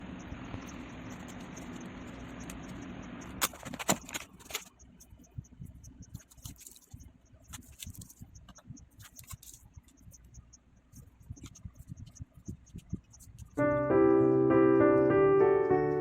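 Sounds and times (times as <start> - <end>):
light clicks and scrapes: 1.0 - 13.6
rustling and clicks of handling: 1.1 - 13.6.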